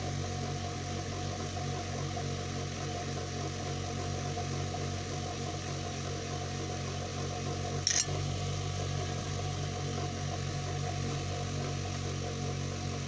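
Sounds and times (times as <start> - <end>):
rotary tool polishing metal: 7.9 - 8.1.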